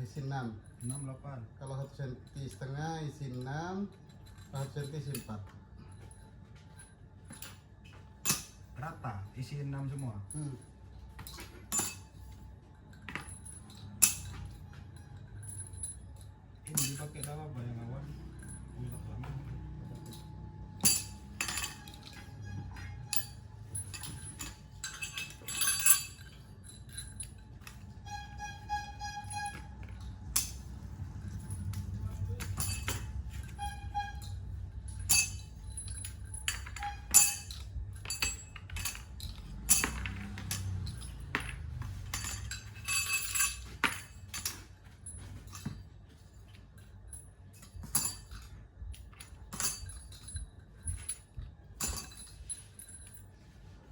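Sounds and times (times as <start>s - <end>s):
metal parts clinking: 0.0s - 9.0s, 9.8s - 53.9s
ringing metallic tone: 8.2s - 45.7s
low hum: 10.2s - 45.6s.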